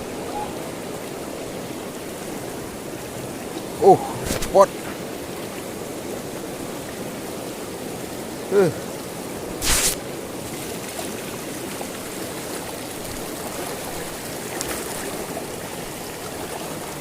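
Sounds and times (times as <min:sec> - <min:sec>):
river water rushing: 0:00.0 - 0:17.0
short burst of noise: 0:09.6 - 0:10.0.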